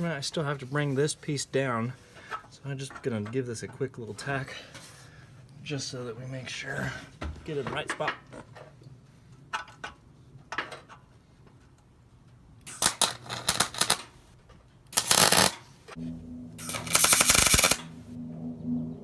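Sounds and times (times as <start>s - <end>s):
crackling welding arc: 12.6s - 14.2s, 14.9s - 15.9s, 16.6s - 18.0s.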